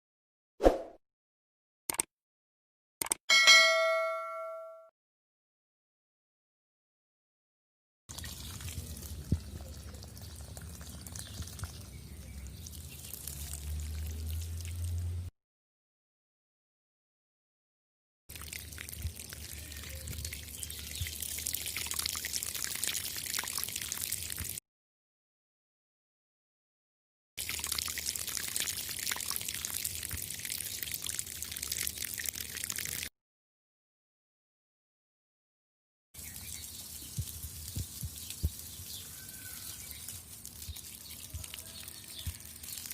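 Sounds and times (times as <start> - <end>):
water drips: 8.1 - 15.3, 18.3 - 24.6, 27.4 - 33.1, 36.2 - 42.9
water trickling and splashing: 8.1 - 15.3, 18.3 - 24.6, 27.4 - 33.1, 36.2 - 42.9.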